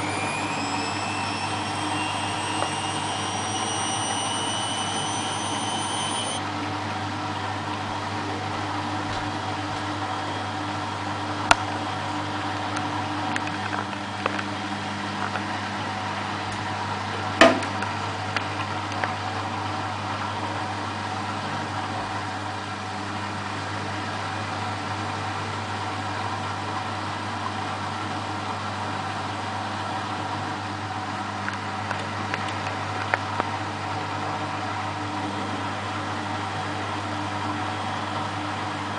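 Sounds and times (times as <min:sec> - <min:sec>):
washing machine spinning: 0:00.0 - 0:38.9
sharp knock: 0:17.4 - 0:17.7.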